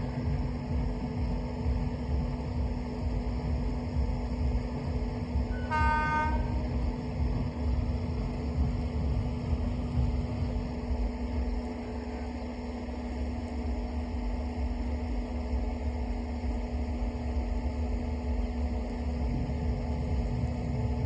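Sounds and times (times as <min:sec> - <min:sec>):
electrical hum: 0:00.0 - 0:21.0
locomotive low rumble: 0:00.0 - 0:21.0.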